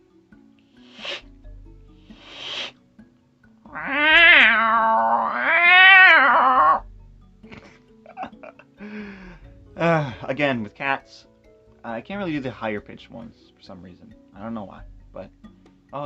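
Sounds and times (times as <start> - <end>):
man hissing like a cat: 0.8 - 1.3, 2.1 - 2.8
man yowling like a cat: 3.8 - 6.8.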